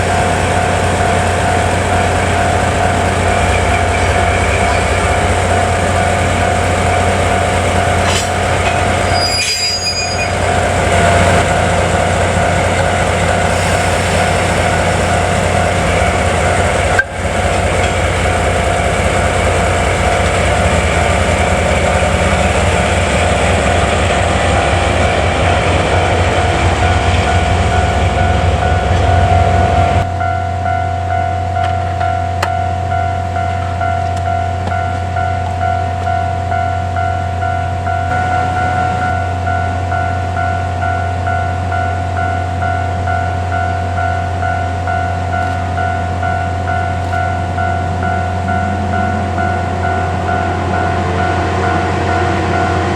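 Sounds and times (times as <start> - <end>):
diesel locomotive passing: 0.0 - 52.9
level-crossing alarm tone: 45.8 - 52.8.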